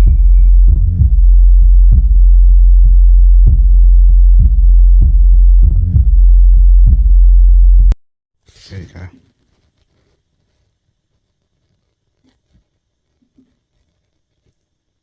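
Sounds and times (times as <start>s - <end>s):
drum hits: 0.0s - 2.5s, 3.4s - 7.2s
deep bass tone from speaker: 0.0s - 8.0s.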